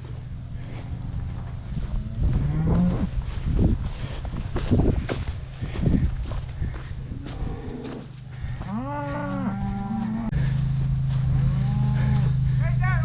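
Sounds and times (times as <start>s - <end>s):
steady low hum: 0.0s - 13.0s
cattle mooing: 1.8s - 3.1s, 7.2s - 10.5s, 11.4s - 12.4s.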